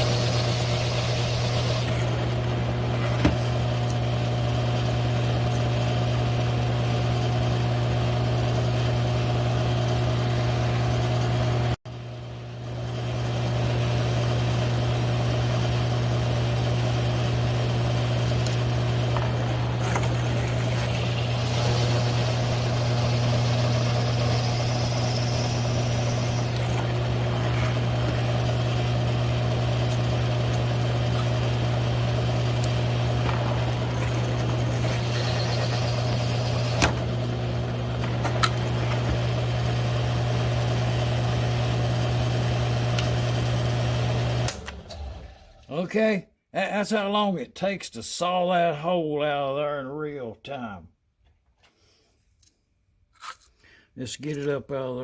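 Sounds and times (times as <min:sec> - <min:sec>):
hole saw cutting steel: 0:00.0 - 0:03.4, 0:18.4 - 0:39.6
mill-drill humming: 0:00.0 - 0:11.7, 0:13.4 - 0:45.6.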